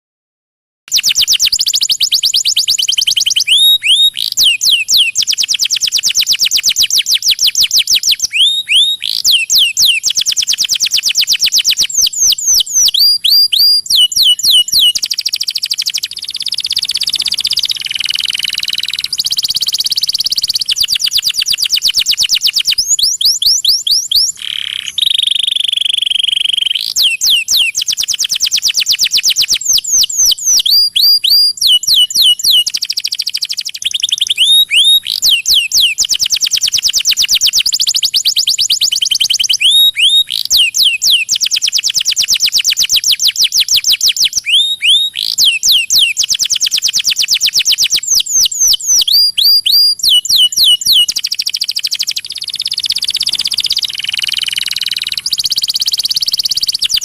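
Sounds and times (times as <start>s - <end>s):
canary trilling and whistling: 0.9s - 57.0s.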